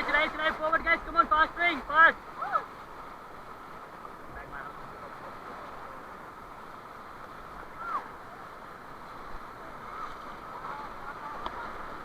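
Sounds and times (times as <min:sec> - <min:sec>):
whitewater rushing: 0:00.0 - 0:12.0.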